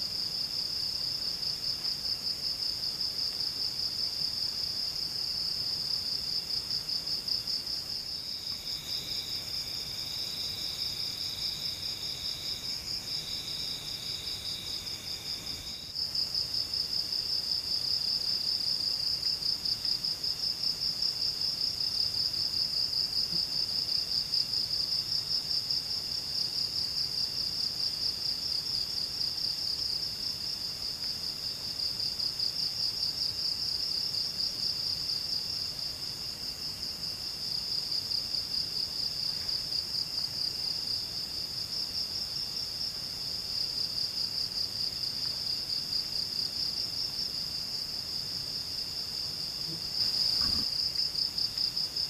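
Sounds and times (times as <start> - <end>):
lower insect trill: 0.1 - 52.0
high-pitched insect trill: 7.3 - 19.4.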